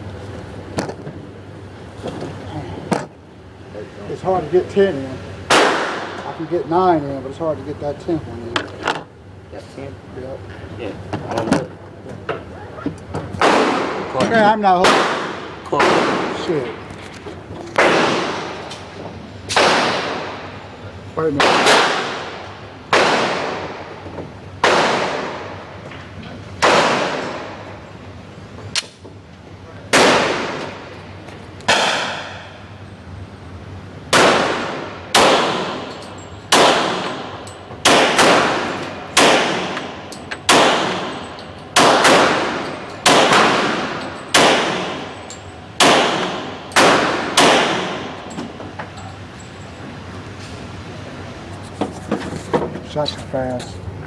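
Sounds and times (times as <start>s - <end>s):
pistol shots echoing: 5.5s - 6.2s, 13.4s - 14.1s, 14.8s - 16.5s, 17.8s - 18.6s, 19.5s - 20.4s, 21.4s - 23.9s, 24.6s - 25.6s, 26.6s - 27.6s, 29.9s - 30.8s, 31.7s - 32.5s, 34.1s - 45.2s, 45.8s - 48.3s.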